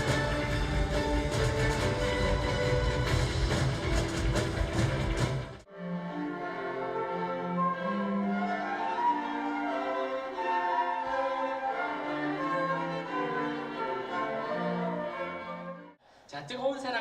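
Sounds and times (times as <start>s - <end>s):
orchestra bowed strings: 0.0s - 16.0s.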